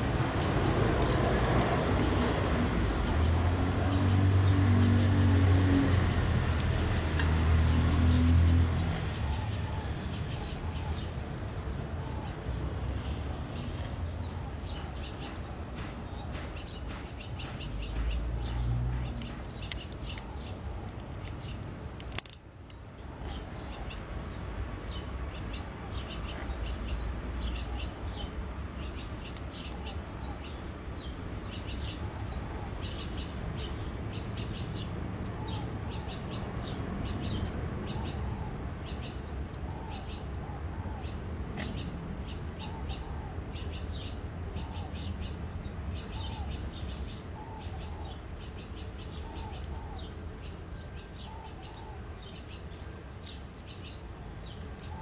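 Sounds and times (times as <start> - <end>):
parrot clicks and chirps: 14.7 - 25.2.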